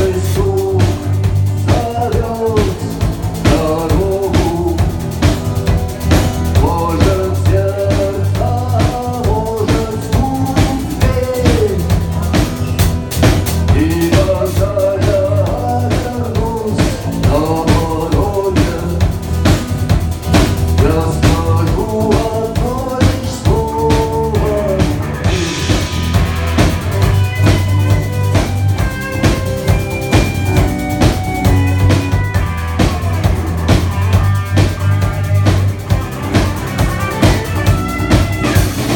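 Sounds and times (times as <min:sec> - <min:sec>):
drum kit beat with rimshots: 0:00.0 - 0:38.9
rock band playing instrumental: 0:00.0 - 0:38.9.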